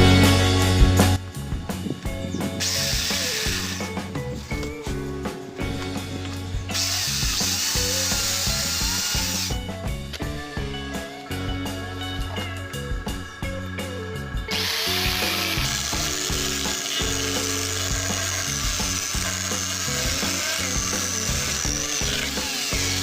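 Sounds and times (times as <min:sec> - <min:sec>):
music with steady beat: 0:00.0 - 0:23.0
grinder sawing through wood: 0:02.5 - 0:09.7, 0:14.5 - 0:23.0.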